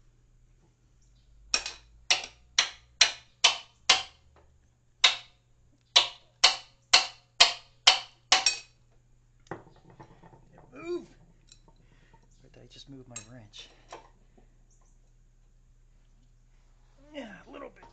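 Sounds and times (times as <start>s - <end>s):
hammer striking wrench: 1.5s - 4.2s, 5.0s - 5.3s, 6.0s - 8.7s.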